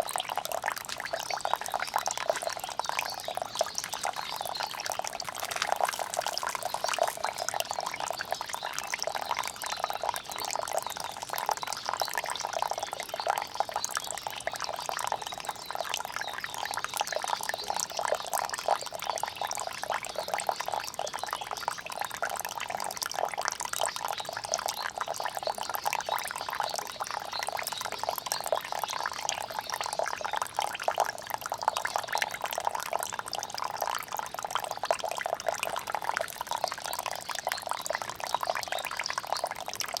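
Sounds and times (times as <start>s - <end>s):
rainwater pouring and splashing: 0.0s - 19.7s.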